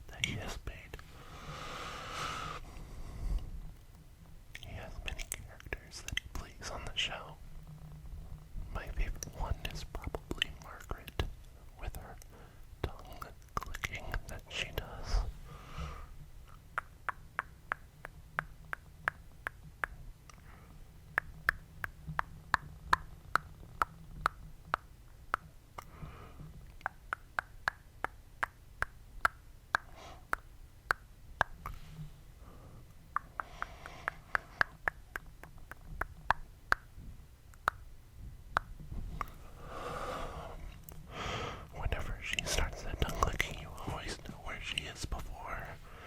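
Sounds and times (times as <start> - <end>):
tongue clicking: 16.5 - 20.4, 26.7 - 31.8, 33.1 - 36.9.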